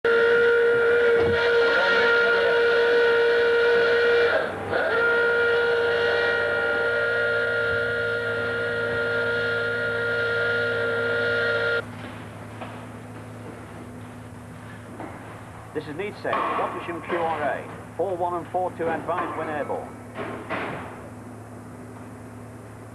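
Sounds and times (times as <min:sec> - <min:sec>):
alarm hooter steady tone: 0:00.0 - 0:11.9
low steady hum: 0:00.0 - 0:22.9.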